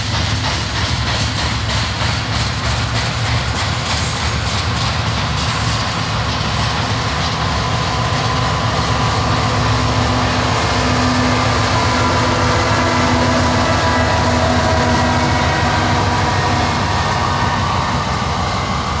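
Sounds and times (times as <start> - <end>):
wheel clatter over rail joints: 0.0 - 10.7
train rumbling past: 0.0 - 19.0.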